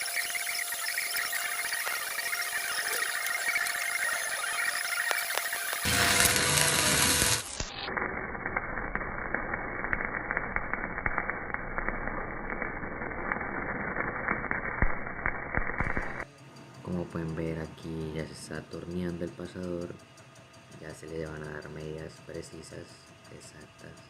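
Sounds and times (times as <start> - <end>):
welding arc crackling: 0.0 - 16.3
welding arc hissing: 0.0 - 16.3.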